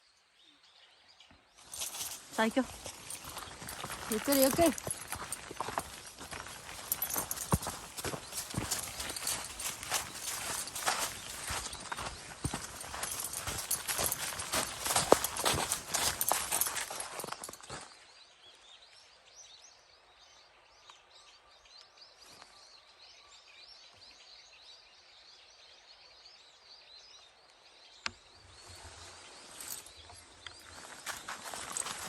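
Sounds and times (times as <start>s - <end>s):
footsteps crunching on snow: 1.6s - 17.9s, 28.6s - 32.0s.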